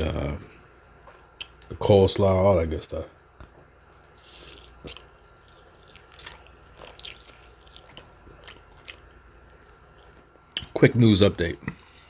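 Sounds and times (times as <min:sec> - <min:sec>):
chewing and biting food: 0:03.8 - 0:10.8.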